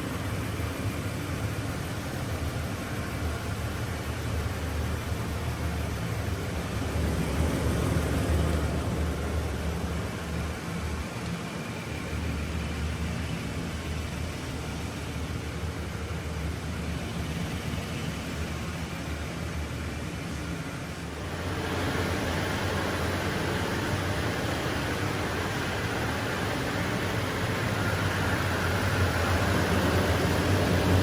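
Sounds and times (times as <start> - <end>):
noisy hiss: 0.0 - 31.0
vehicle engine running: 0.0 - 31.0.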